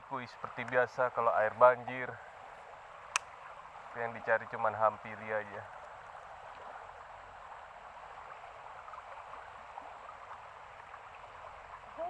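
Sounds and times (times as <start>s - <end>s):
water running in stream: 0.0s - 12.0s.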